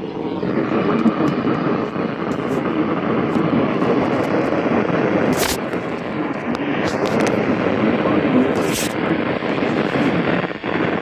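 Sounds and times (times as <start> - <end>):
radio static hiss: 0.0 - 11.0
sharp radio crackle: 0.0 - 11.0
radio clicks: 0.7 - 4.6, 5.3 - 7.4.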